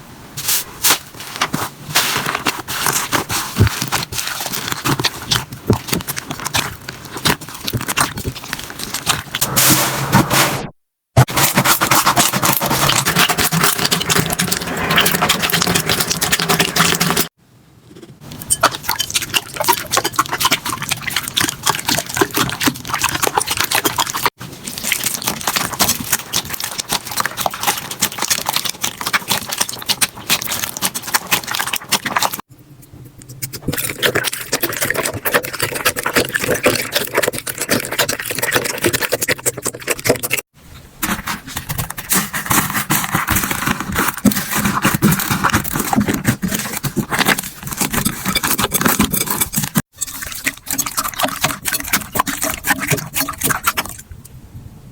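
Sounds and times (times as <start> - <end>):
slime crackling and popping: 2.0 - 9.6, 18.4 - 32.5.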